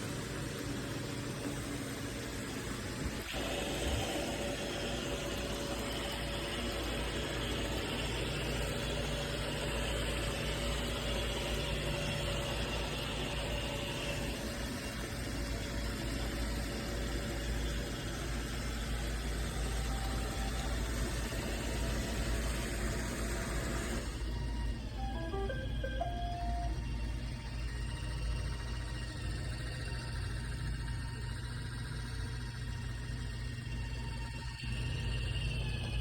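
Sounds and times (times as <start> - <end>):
thin high whine: 25.0 - 27.4.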